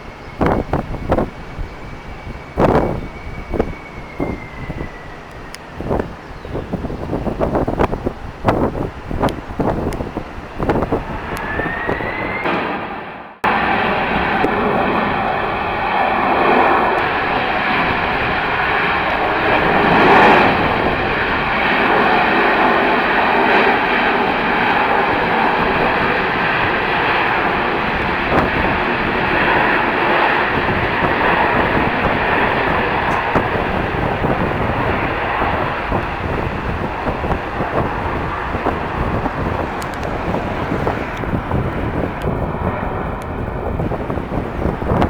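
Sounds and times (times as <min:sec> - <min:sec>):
faint high whine: 0:00.0 - 0:06.8
jet airliner engines rushing: 0:00.0 - 0:45.0.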